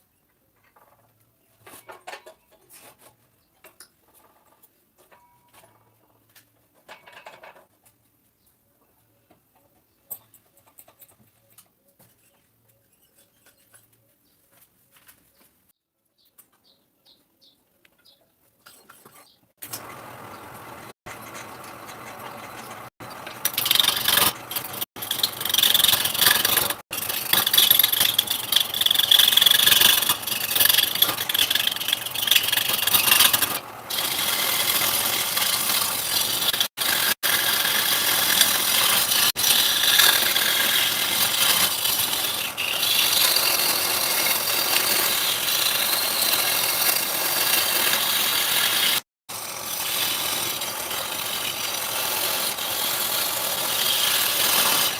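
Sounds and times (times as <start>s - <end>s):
power tools cutting wood: 19.6s - 54.9s.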